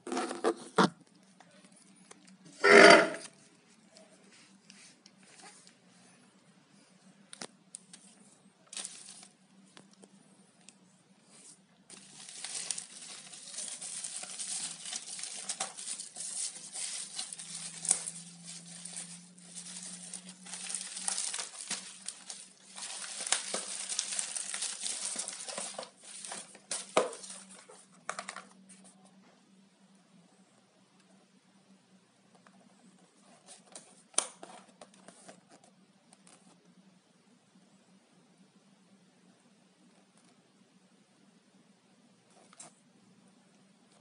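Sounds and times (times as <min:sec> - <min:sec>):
plastic packaging crinkling: 0:08.7 - 0:09.4, 0:11.9 - 0:28.6.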